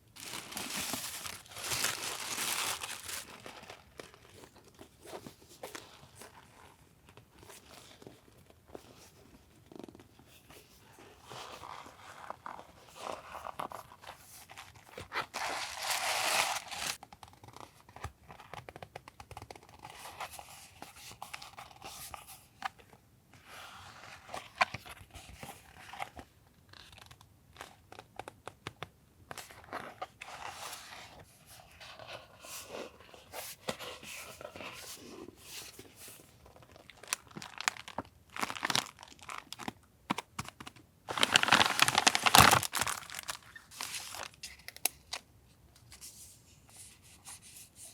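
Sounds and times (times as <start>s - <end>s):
packaging crinkling and tearing: 0.0s - 4.8s, 14.8s - 17.0s, 36.5s - 45.2s.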